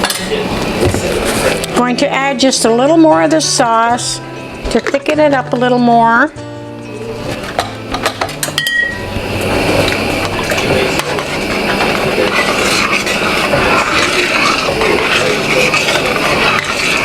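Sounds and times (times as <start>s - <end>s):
spoon stirring chili in pot: 7.3s - 17.0s.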